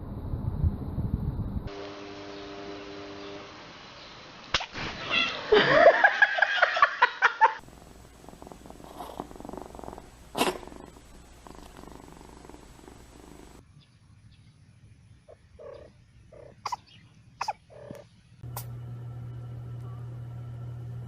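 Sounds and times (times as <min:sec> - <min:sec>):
kitten sneezing: 0:10.3 - 0:10.7, 0:16.6 - 0:16.8, 0:17.4 - 0:17.6.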